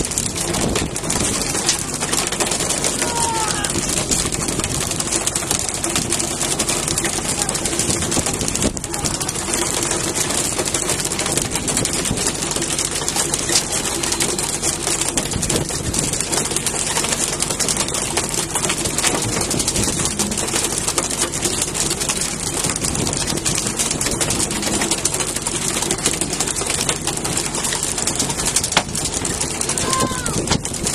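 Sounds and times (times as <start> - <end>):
boat engine: 0.0 - 30.9
rushing water: 0.0 - 30.9
faint voices: 1.4 - 4.4, 5.6 - 10.6, 29.5 - 30.7.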